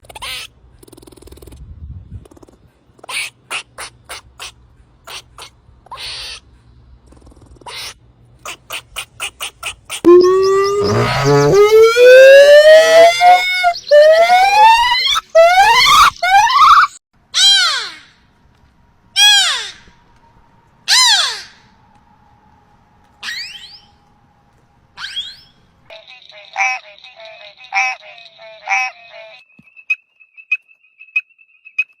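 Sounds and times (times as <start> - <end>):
sustained sliding animal call: 10.1 - 16.9.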